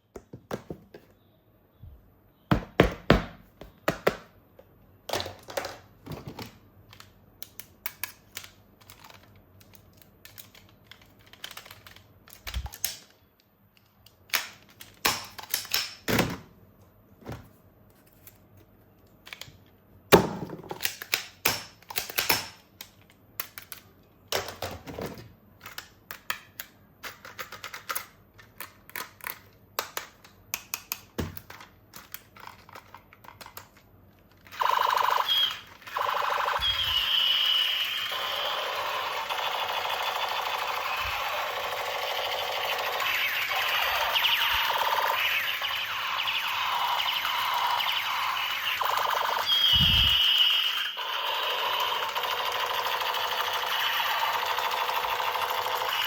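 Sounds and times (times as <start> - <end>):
plastic toy parts clicking: 5.1 - 16.1, 19.0 - 19.8, 20.7 - 24.9, 25.6 - 36.0.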